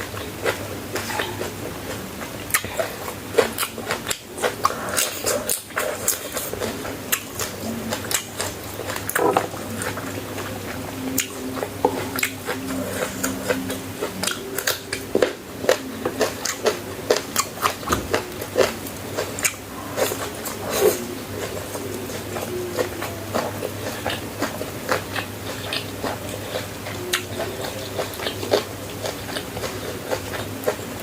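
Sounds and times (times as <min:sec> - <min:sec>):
chewing and biting food: 0:00.0 - 0:31.0
clicking mouth sounds: 0:02.5 - 0:02.9.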